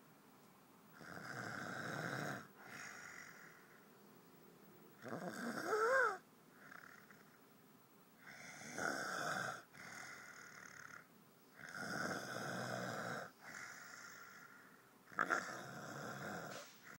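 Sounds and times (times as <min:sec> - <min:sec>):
quiet breathing: 0:00.9 - 0:16.9
man snoring: 0:01.0 - 0:03.6, 0:05.0 - 0:07.3, 0:08.2 - 0:16.6.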